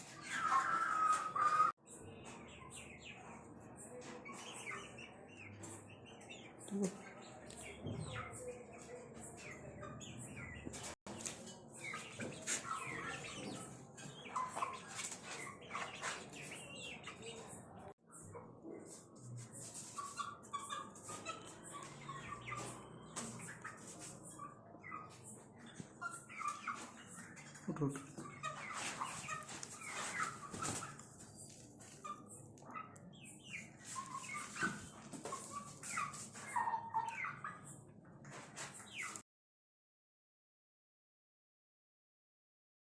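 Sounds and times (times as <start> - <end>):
chicken calls: 0.0 - 1.8, 19.6 - 39.2
chicks peeping: 0.0 - 39.2.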